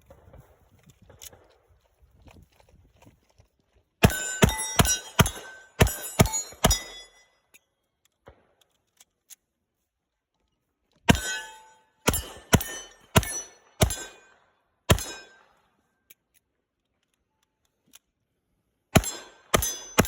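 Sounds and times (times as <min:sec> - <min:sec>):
gunshots: 0:04.0 - 0:07.0, 0:11.1 - 0:14.3, 0:14.9 - 0:15.4, 0:19.0 - 0:20.0
ring of struck steel targets: 0:04.0 - 0:07.4, 0:11.1 - 0:15.7, 0:19.0 - 0:20.0.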